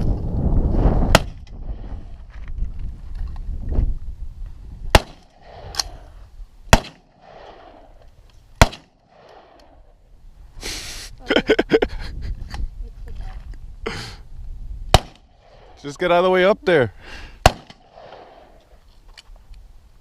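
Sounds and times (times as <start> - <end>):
rifle shots: 1.1 - 1.5, 4.9 - 6.0, 6.7 - 8.0, 8.6 - 9.8, 14.9 - 15.8, 17.4 - 18.6.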